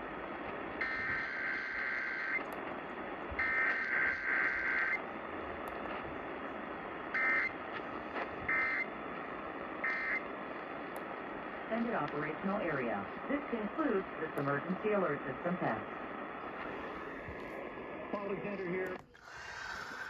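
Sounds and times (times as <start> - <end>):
radio hiss: 0.0 - 20.0.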